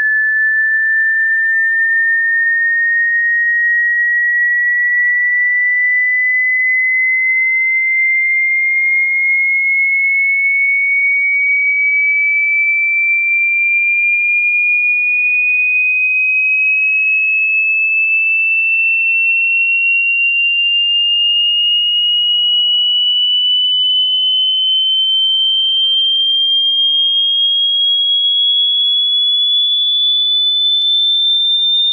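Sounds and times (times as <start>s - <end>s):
sine test tone gliding upward: 0.0s - 8.6s, 20.6s - 31.9s.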